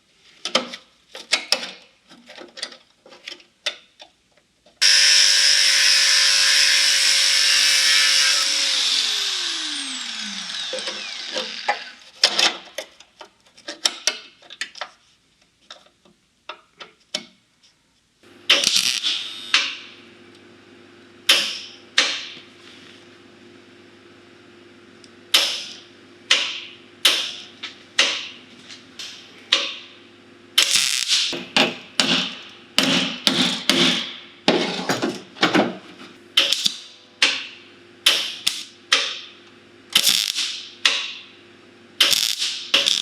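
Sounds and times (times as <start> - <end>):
machine hum: 4.8 - 12.2, 18.2 - 32.8.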